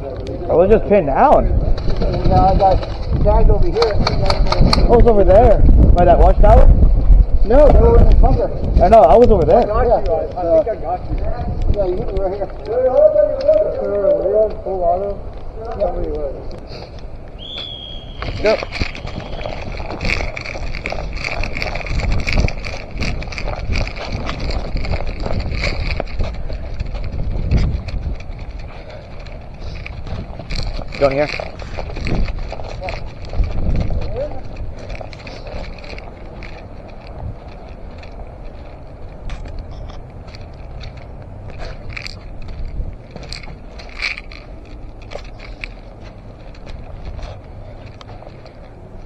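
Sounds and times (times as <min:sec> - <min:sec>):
wind noise on microphone: 0:00.0 - 0:49.0
footsteps crunching through dry leaves: 0:10.8 - 0:49.0.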